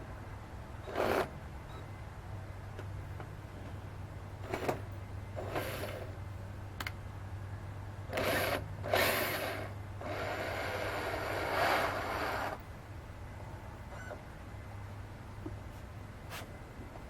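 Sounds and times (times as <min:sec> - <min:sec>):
steady low hum: 0:00.0 - 0:17.0
handheld power tool running: 0:08.1 - 0:12.6.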